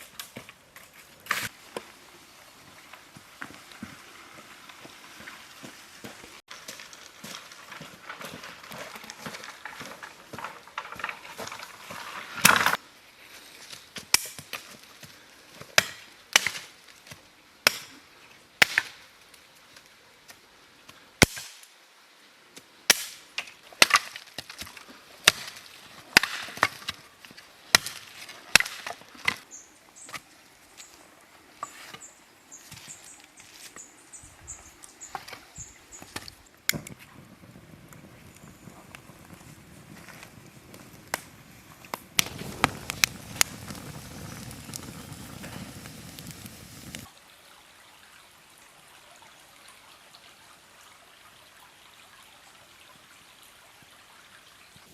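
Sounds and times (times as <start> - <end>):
firewood cracking: 6.1 - 12.8, 22.9 - 31.0, 35.0 - 47.1.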